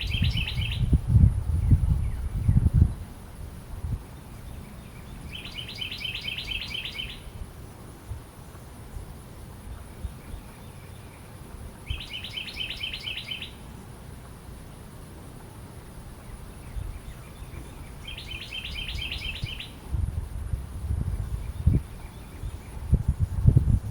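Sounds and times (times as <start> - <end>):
wren singing: 0.0 - 3.2, 3.9 - 7.5, 8.4 - 13.9, 15.7 - 19.9, 21.1 - 23.0.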